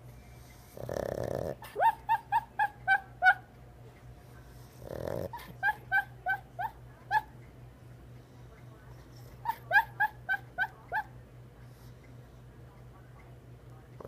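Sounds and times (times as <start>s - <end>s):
dog snoring: 0.4s - 2.0s, 4.6s - 5.8s
dog whimpering: 0.8s - 3.4s, 4.8s - 7.3s, 9.4s - 11.1s.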